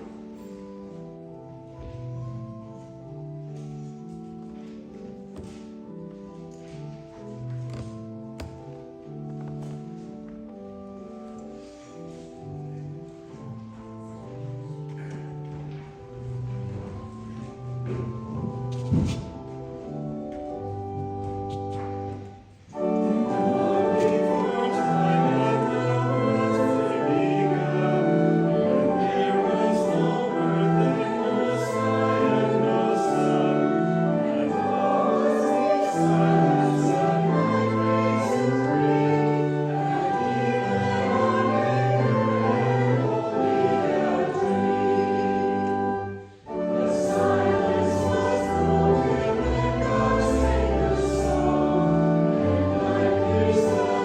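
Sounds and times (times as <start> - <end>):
organ accompaniment: 0.0 - 54.0
congregation singing a hymn: 11.3 - 54.0.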